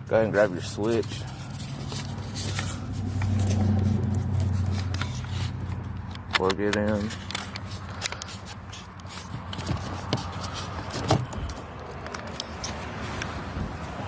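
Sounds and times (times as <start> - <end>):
plastic clicks and rattles: 4.8 - 12.8.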